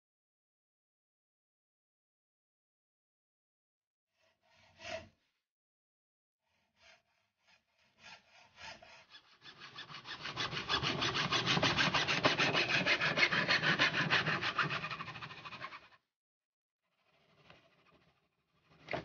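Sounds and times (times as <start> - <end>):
rasping hand strokes: 6.7 - 16.0.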